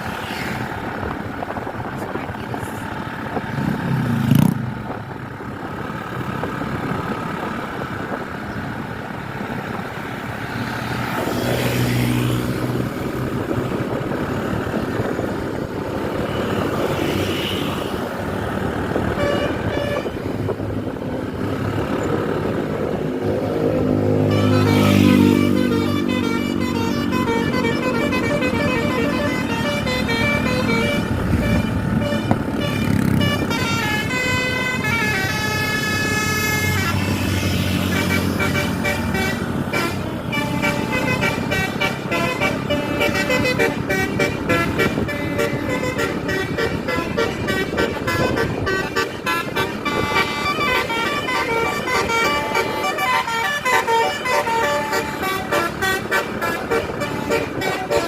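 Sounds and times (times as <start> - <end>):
bus engines running: 0.0 - 58.0
traffic: 0.0 - 58.0
multi-tone bus horns tooting: 11.6 - 21.1, 23.1 - 58.0.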